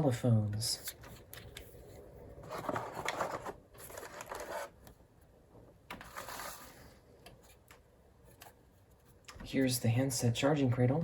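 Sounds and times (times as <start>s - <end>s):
packaging rustling and clicking: 2.5s - 4.9s.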